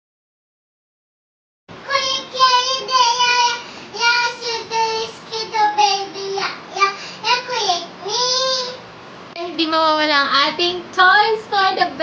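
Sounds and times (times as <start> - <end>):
young child singing: 1.8 - 8.8.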